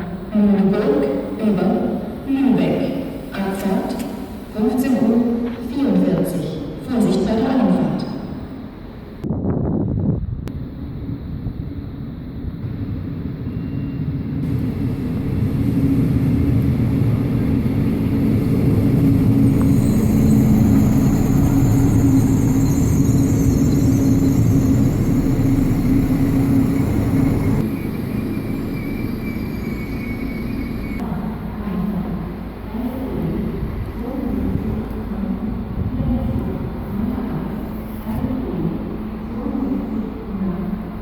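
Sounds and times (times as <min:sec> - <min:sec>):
train rumbling: 0:08.4 - 0:41.0.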